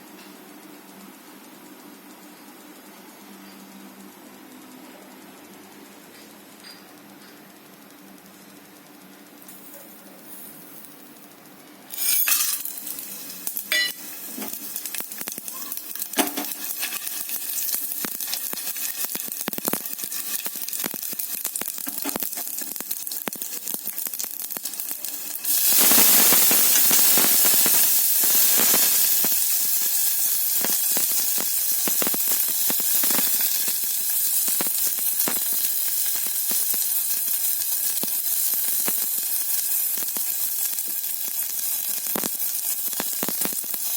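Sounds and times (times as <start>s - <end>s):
food sizzling in hot oil: 11.9s - 43.9s.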